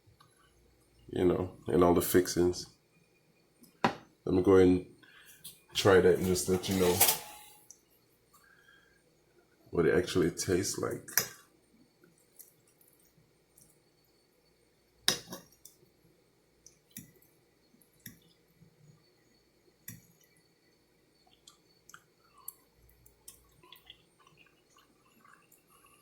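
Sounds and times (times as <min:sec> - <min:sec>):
cutlery clicking on a plate: 0:06.2 - 0:07.5.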